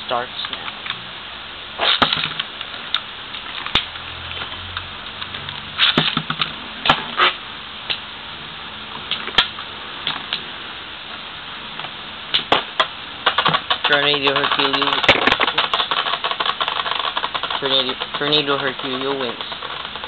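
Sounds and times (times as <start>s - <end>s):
steady hiss: 0.0s - 20.0s
spinning tops clashing: 12.3s - 20.0s.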